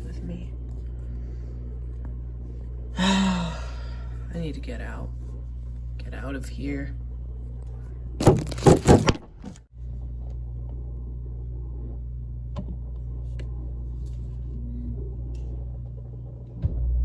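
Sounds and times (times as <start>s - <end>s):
steady low hum: 0.0s - 17.0s
clattering knocks and rustling: 8.2s - 9.6s.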